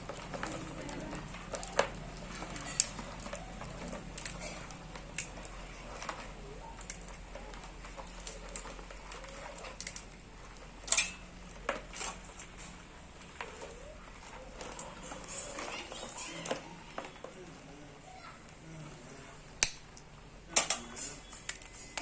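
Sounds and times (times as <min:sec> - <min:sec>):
clicks of crab shell handled: 0:19.6 - 0:22.0.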